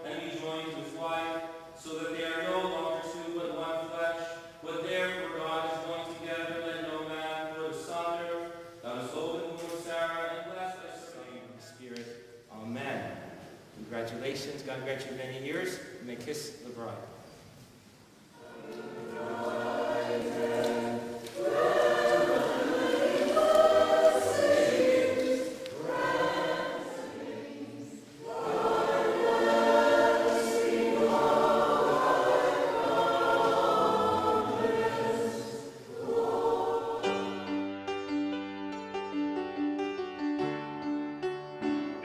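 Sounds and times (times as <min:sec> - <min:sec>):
choir singing: 0:18.3 - 0:37.9.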